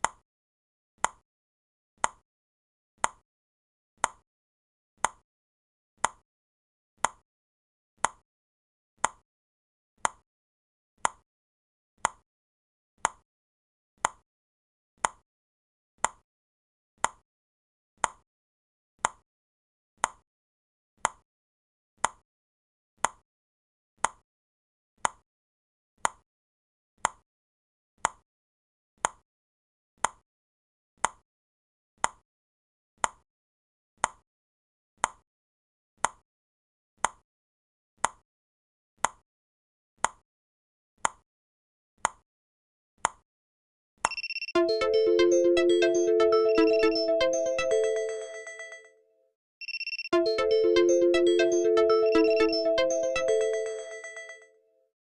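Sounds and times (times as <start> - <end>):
countdown timer ticking: 44.1 - 48.7, 49.6 - 54.4.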